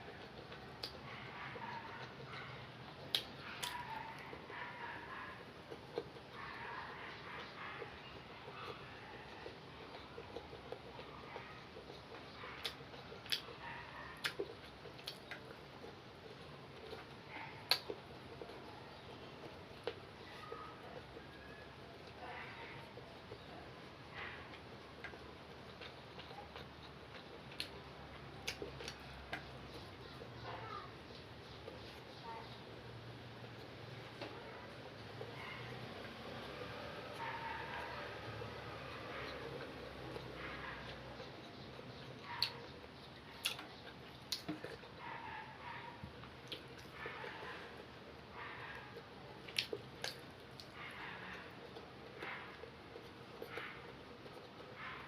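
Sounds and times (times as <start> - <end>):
wet chewing sounds: 0.0 - 55.0
person eating with sharp clicks: 0.1 - 1.1, 2.8 - 4.5, 11.8 - 13.6, 14.2 - 20.0, 24.5 - 32.0, 39.3 - 45.0, 46.2 - 47.4, 49.4 - 55.0.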